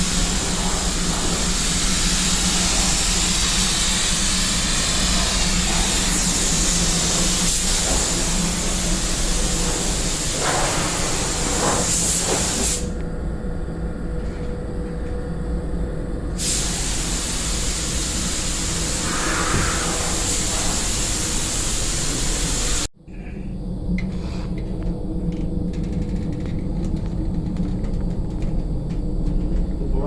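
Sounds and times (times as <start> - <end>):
spraying hiss: 0.0 - 13.0, 16.4 - 22.9
low hum: 12.8 - 16.4, 23.0 - 30.0.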